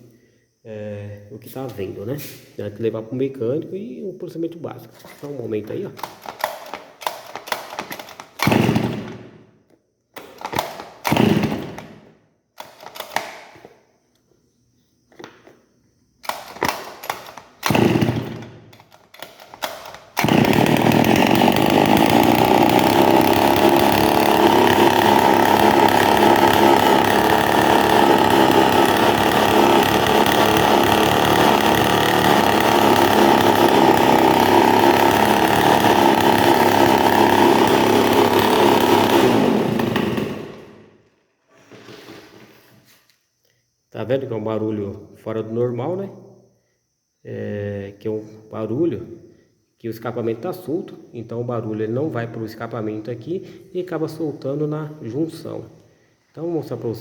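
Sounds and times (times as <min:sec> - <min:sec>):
starter cord pulls: 0:05.2 - 0:09.2, 0:12.6 - 0:13.4, 0:16.2 - 0:40.8
brushcutter engine running: 0:05.9 - 0:09.2, 0:11.1 - 0:11.8, 0:17.6 - 0:18.5, 0:19.8 - 0:40.8.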